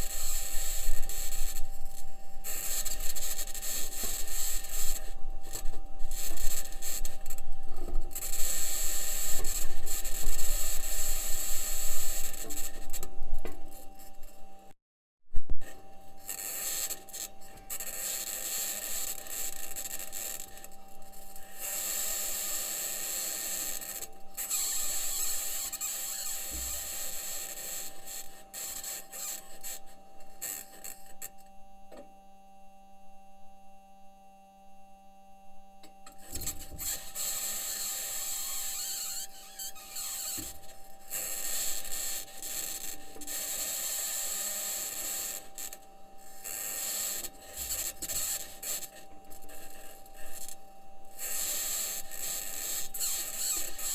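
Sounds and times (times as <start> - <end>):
steady hum tones: 0.0 - 14.8.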